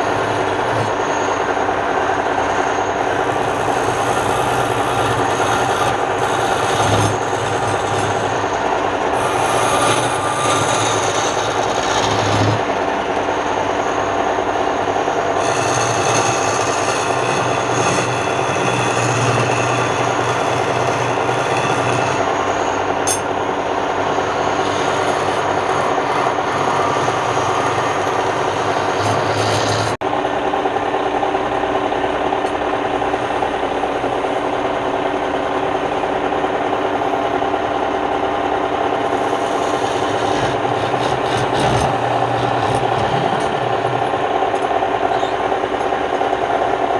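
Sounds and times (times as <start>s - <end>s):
turning tool cutting wood: 0.0s - 13.3s, 15.0s - 23.2s, 24.0s - 30.0s, 38.8s - 45.9s
wood lathe running: 0.0s - 46.9s.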